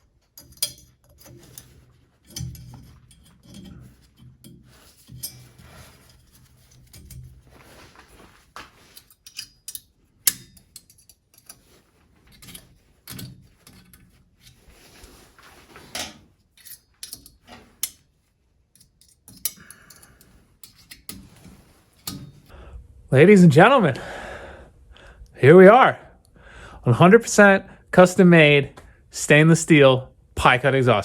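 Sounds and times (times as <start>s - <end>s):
metallic clinks and taps: 0.3s - 7.7s, 8.8s - 14.1s, 16.0s - 18.0s, 18.8s - 22.5s.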